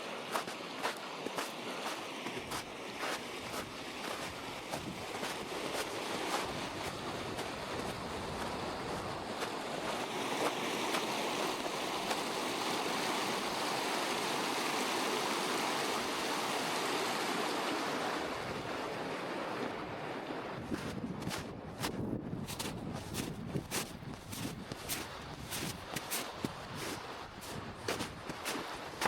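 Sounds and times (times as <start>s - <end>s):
rushing mountain stream: 0.0s - 29.0s
footsteps in snow: 0.2s - 12.4s, 20.6s - 29.0s.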